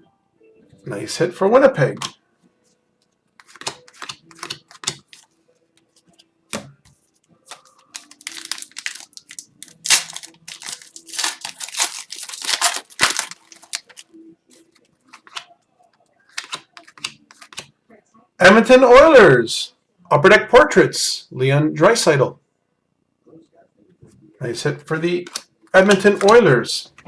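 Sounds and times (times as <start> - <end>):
card clicks and flicks: 3.4 - 5.2
wrapper tearing and crinkling: 7.5 - 14.1.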